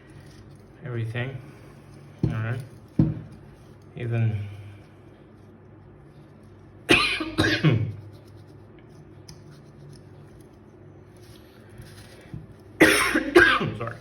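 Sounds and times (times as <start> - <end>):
man coughing: 6.9 - 7.9, 12.8 - 14.0.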